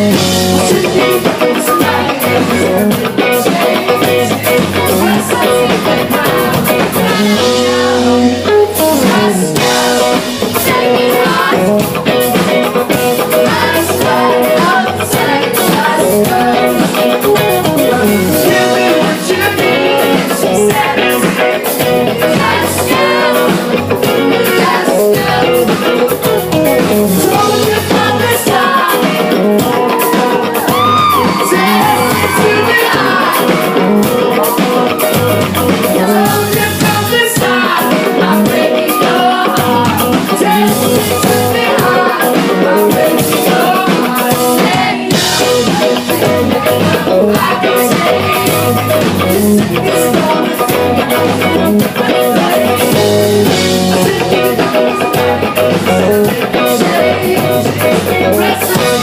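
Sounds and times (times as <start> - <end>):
bass guitar: 0.0 - 59.0
drum kit: 0.0 - 59.0
electric guitars: 0.0 - 59.0
sung vocals: 0.0 - 59.0.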